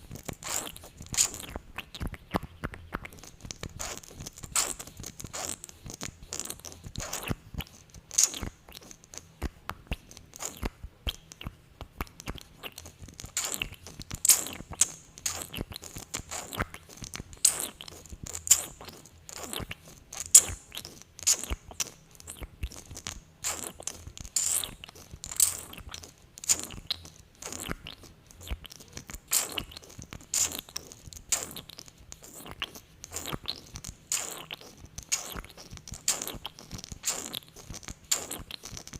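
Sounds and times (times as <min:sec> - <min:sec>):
wet lip smacks: 0:00.1 - 0:38.9.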